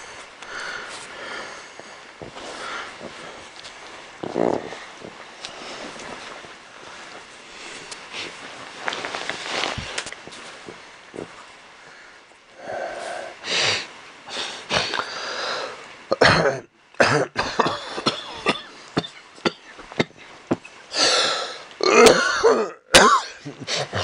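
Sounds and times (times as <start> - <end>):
person coughing: 16.2 - 20.2, 21.8 - 24.0.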